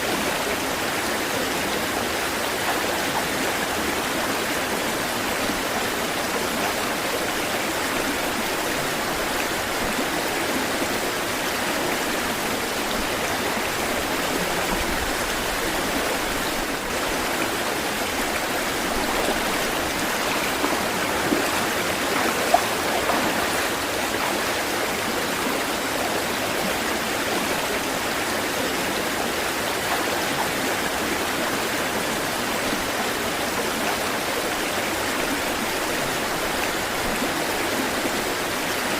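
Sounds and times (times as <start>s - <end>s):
running water rushing: 0.0s - 38.9s
water splashes: 6.8s - 32.9s.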